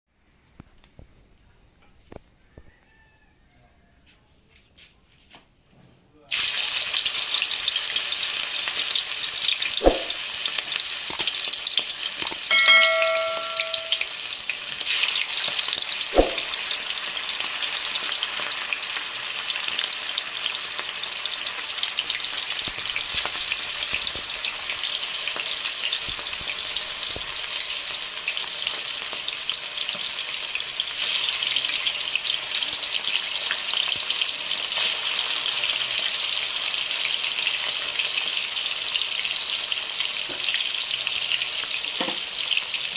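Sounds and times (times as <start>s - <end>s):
food sizzling in oil: 6.3s - 42.9s
sharp knocks: 9.8s - 10.2s, 16.2s - 16.5s
ringing clink: 12.5s - 14.1s.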